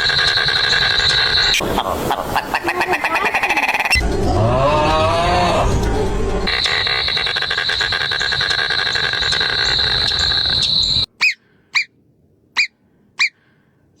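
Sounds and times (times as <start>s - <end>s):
insect trill: 0.0s - 1.6s, 6.5s - 11.1s.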